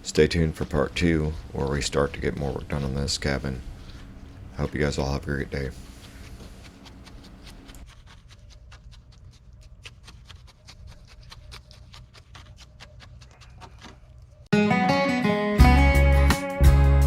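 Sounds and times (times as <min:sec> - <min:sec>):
acoustic guitar music: 0:14.5 - 0:17.0.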